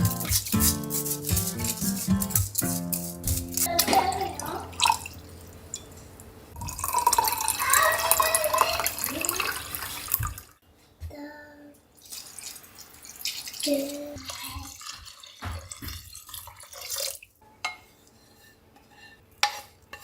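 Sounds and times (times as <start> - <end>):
water running into a sink: 3.2 - 5.8, 6.6 - 10.6, 12.0 - 17.3
water dripping: 3.6 - 10.6, 12.0 - 17.3.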